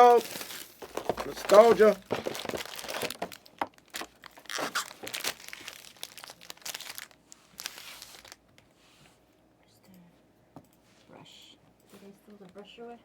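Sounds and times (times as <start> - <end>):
packaging crumpled and torn: 0.0 - 8.4.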